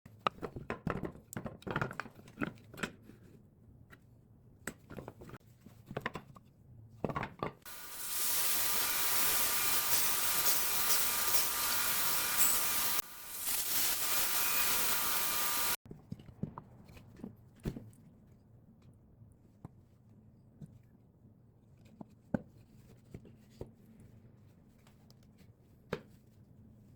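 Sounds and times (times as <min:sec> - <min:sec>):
power tool running: 0:07.7 - 0:15.8.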